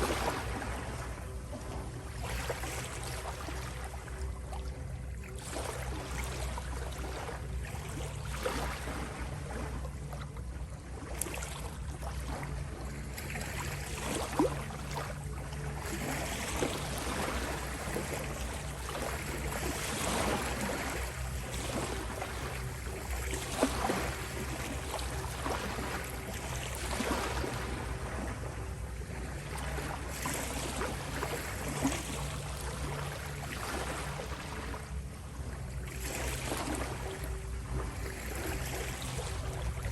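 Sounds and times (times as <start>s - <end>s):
ocean waves washing in: 0.0s - 4.2s, 15.8s - 39.9s
steady low tone drone: 0.0s - 39.9s.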